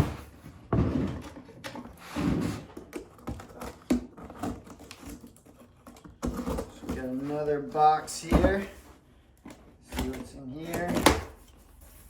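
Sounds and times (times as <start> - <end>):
cardboard boxes rustling: 0.0 - 12.0.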